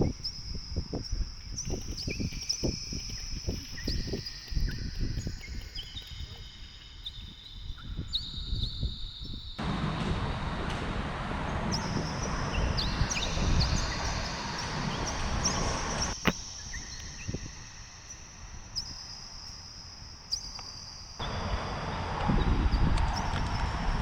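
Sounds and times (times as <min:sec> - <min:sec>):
wind buffeting microphone: 0:00.0 - 0:17.8, 0:21.2 - 0:24.0
sharp crack: 0:09.6 - 0:14.2.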